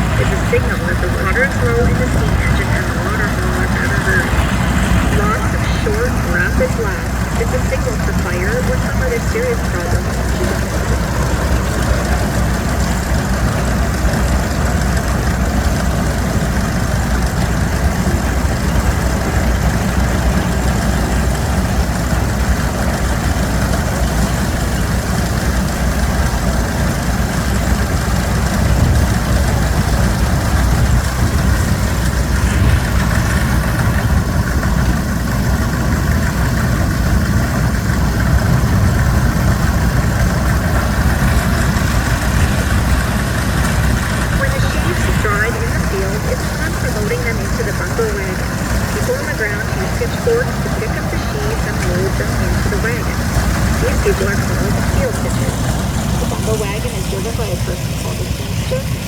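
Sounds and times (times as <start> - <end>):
farm machinery engine running: 0.0 - 59.0.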